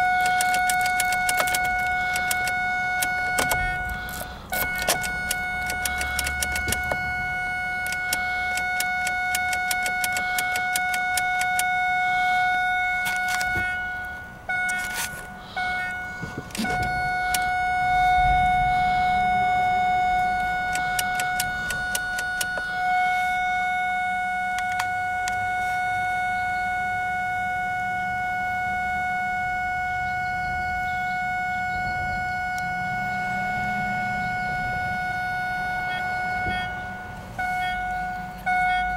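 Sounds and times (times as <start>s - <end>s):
sharp clicks: 0.0s - 7.1s, 7.7s - 11.8s, 13.0s - 13.8s, 20.6s - 22.7s, 24.5s - 25.4s
continuous warning tone: 0.0s - 38.9s.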